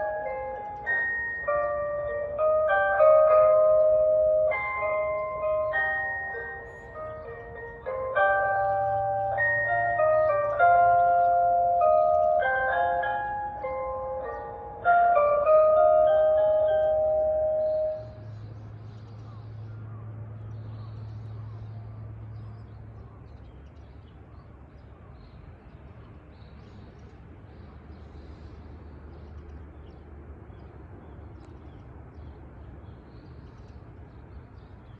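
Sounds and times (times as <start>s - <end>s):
public-address chime: 0.0s - 18.2s
small birds chirping: 0.0s - 34.9s.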